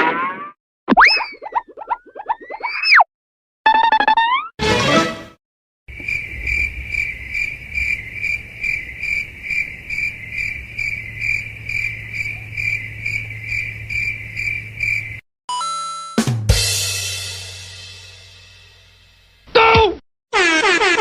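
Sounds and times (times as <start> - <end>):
crickets chirping: 5.9 - 15.2.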